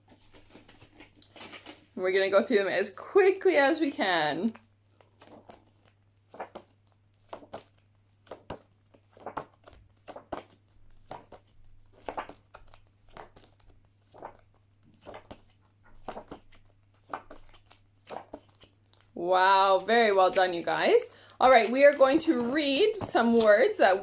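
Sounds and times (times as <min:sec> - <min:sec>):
woman saying letter sounds: 0:02.0 - 0:04.6, 0:19.2 - 0:24.0.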